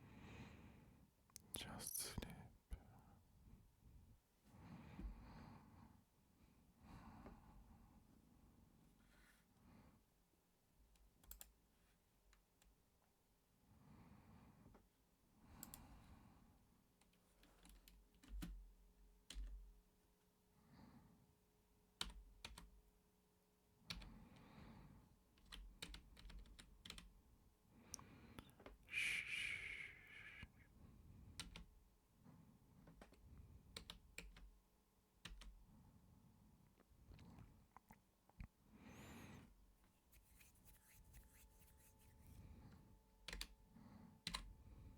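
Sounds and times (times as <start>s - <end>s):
typing on computer keyboard: 17.4s - 19.6s, 22.0s - 22.7s, 25.4s - 27.1s, 31.4s - 31.7s, 32.8s - 34.5s, 35.2s - 35.6s, 44.2s - 44.5s.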